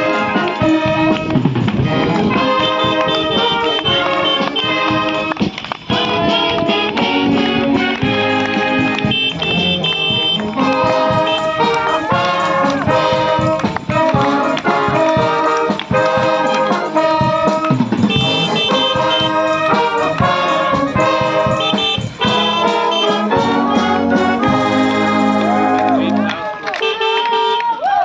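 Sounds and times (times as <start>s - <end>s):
brass band playing: 0.0s - 27.7s.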